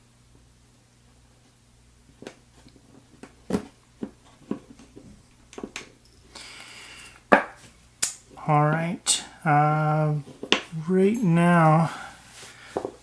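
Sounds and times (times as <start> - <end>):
metal clicks of padlock parts: 8.0 - 8.2.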